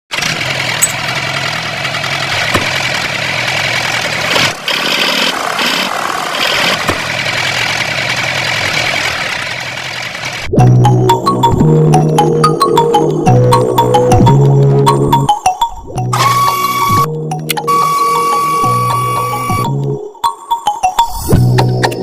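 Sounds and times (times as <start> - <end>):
music: 10.5 - 22.0.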